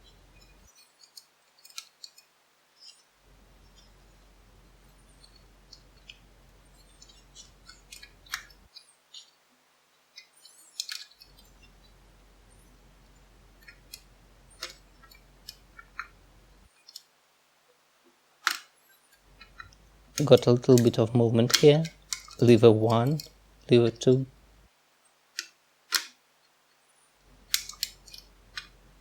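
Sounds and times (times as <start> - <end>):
lock picks clicking in padlock: 27.5 - 28.7.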